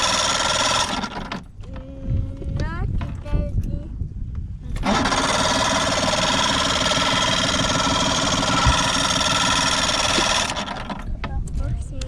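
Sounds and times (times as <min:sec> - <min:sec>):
boat engine starter cranking: 0:00.0 - 0:01.8, 0:04.8 - 0:11.4.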